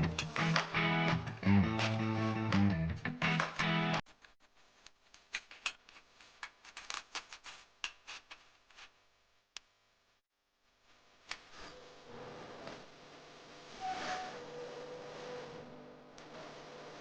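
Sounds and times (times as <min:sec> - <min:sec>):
guitar music: 0:00.0 - 0:04.0.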